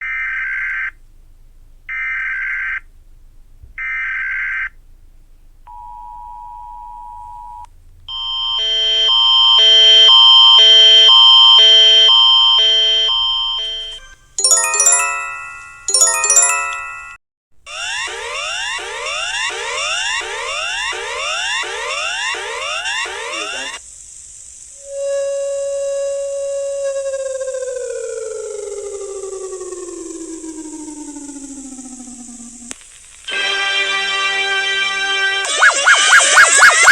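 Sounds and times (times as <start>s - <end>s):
falling beeps: 8.1s - 17.0s, 35.5s - 36.9s
pulsing chord-like alarm: 8.6s - 23.8s, 33.3s - 36.9s
data-burst screeches: 19.4s - 23.8s, 35.4s - 36.9s
rising sweeps: 35.3s - 36.9s.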